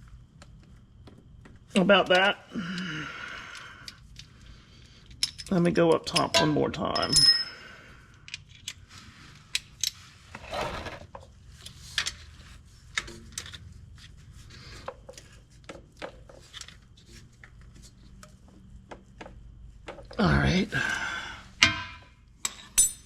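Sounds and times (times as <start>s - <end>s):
tools clicking and clinking: 5.0s - 7.5s.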